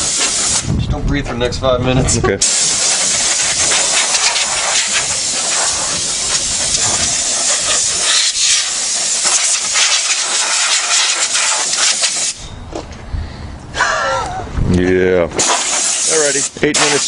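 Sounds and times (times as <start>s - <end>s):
compressed air blow gun hissing: 0.0s - 0.7s, 2.4s - 12.5s, 15.4s - 17.0s.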